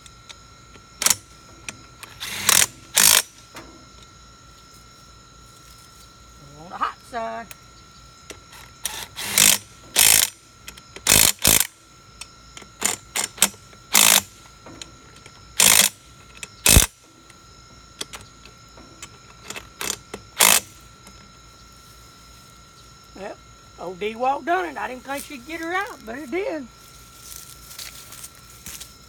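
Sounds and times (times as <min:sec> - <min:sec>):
impact wrench hammering: 0:01.0 - 0:03.8, 0:08.3 - 0:11.8, 0:12.6 - 0:17.1, 0:18.0 - 0:20.8.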